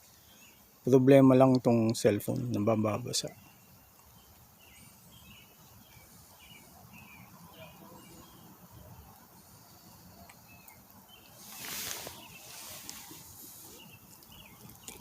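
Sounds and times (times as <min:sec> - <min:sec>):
bird chirping: 0:00.0 - 0:15.0.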